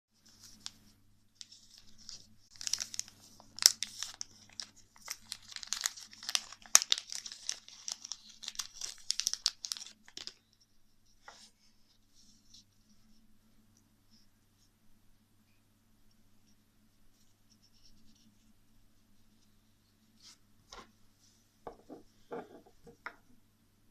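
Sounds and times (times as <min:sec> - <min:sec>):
plastic packaging crinkling and tearing: 0:01.4 - 0:10.4.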